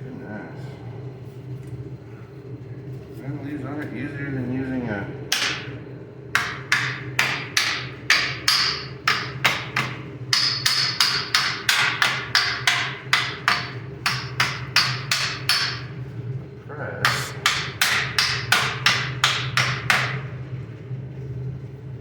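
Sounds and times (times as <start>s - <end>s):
hammer striking metal: 5.3s - 5.8s, 6.4s - 15.9s, 17.0s - 20.3s.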